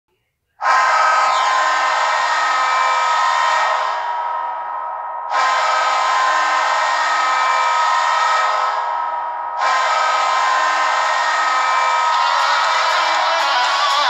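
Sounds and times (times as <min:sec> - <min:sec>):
goal horn blasts: 0:00.6 - 0:14.0
crowd din: 0:08.9 - 0:14.0.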